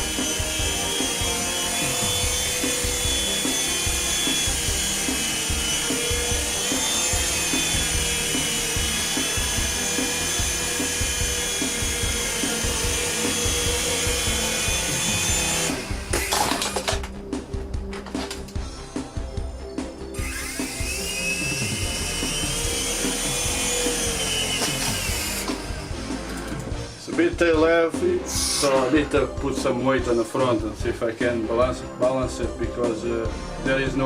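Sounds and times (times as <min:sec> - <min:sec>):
toy helicopter rotors whirring: 0:20.2 - 0:25.8.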